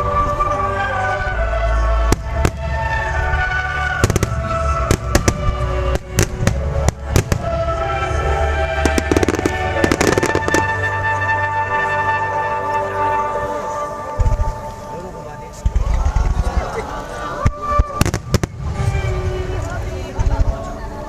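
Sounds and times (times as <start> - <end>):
music: 0.0 - 21.0
fireworks crackling: 1.9 - 11.4, 14.0 - 20.8
fireworks bangs: 2.1 - 10.9, 15.6 - 20.6.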